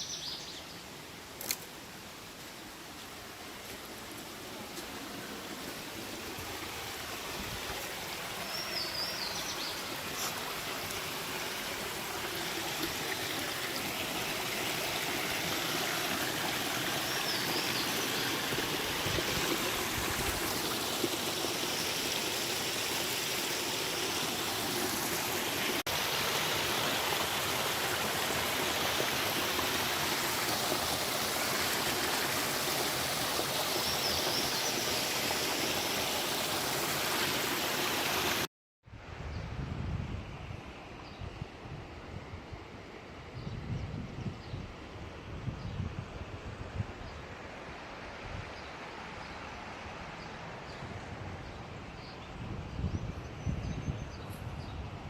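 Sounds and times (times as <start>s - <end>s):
stream water rushing: 0.8s - 38.5s.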